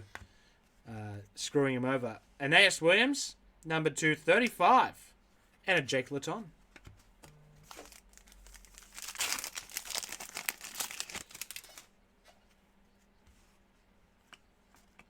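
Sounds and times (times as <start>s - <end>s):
wrapper tearing and crinkling: 7.6s - 11.9s.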